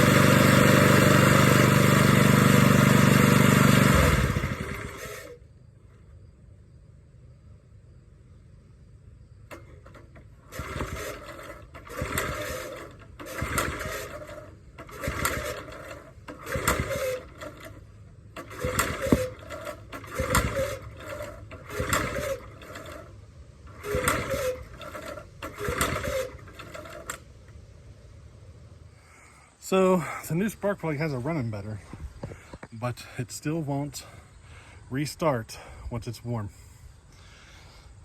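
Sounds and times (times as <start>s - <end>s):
recoil starter cranking rattle: 0.0s - 5.4s, 9.4s - 27.6s.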